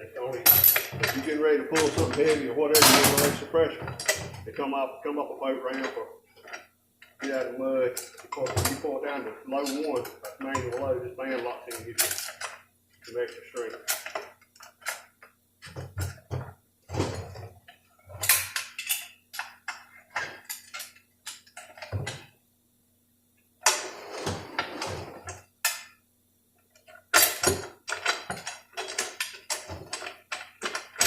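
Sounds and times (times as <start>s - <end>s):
metal tools clinking and knocking: 0.4s - 4.4s, 5.7s - 8.9s, 9.6s - 17.5s, 18.1s - 22.2s, 26.8s - 31.0s.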